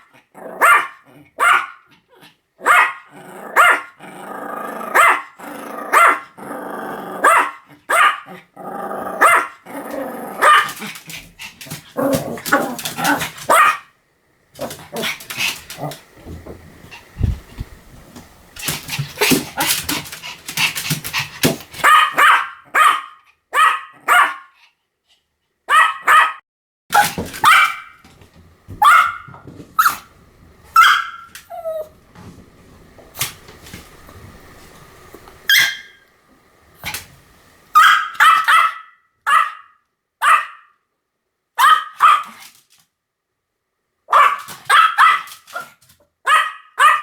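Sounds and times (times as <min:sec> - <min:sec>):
small dog barking: 0:00.0 - 0:01.9, 0:02.6 - 0:04.0, 0:04.9 - 0:06.2, 0:07.2 - 0:08.3, 0:09.2 - 0:09.6, 0:10.4 - 0:10.9, 0:12.0 - 0:13.9, 0:21.8 - 0:24.6, 0:25.7 - 0:28.0, 0:28.8 - 0:30.1, 0:30.7 - 0:31.9, 0:35.5 - 0:36.0, 0:37.7 - 0:40.8, 0:41.6 - 0:42.4, 0:44.1 - 0:47.0.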